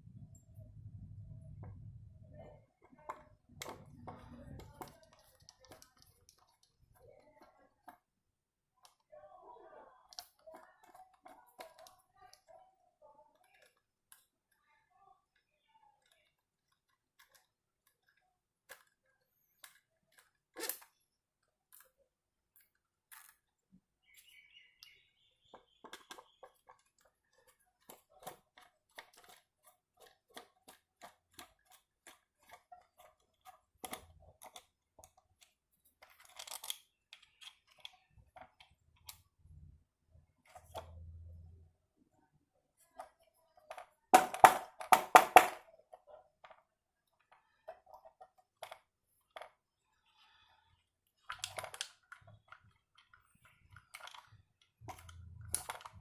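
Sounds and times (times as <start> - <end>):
clicks of small parts being fitted: 25.8 - 39.2.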